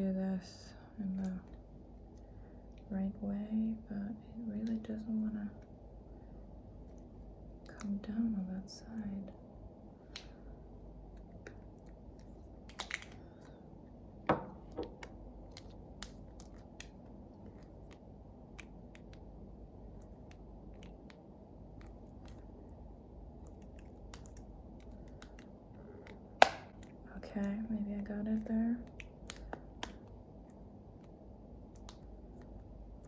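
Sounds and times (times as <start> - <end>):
low steady hum: 0.0 - 33.0.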